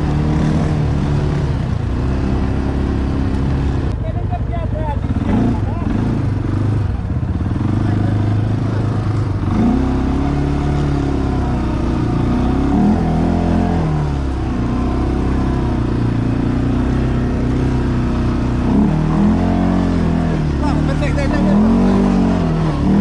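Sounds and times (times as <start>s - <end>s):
atv engine revving: 0.0s - 23.0s.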